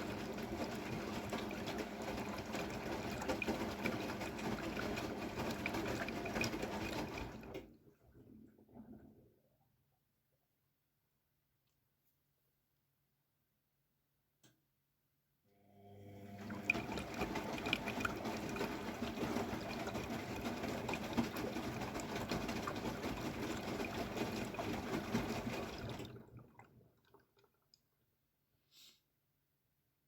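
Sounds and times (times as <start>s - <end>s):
water rushing into washing machine: 0.0s - 9.5s, 15.8s - 27.6s.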